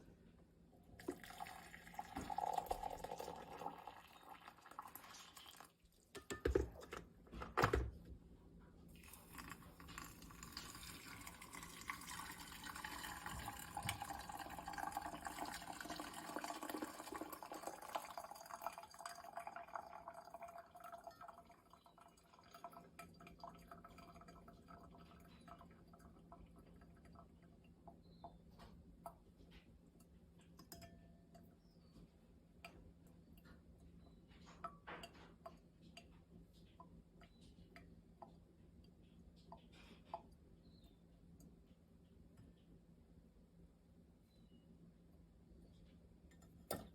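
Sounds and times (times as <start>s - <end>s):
liquid pouring: 1.0s - 6.1s, 8.9s - 27.5s
drips and small clicks: 9.0s - 14.7s, 17.8s - 42.8s.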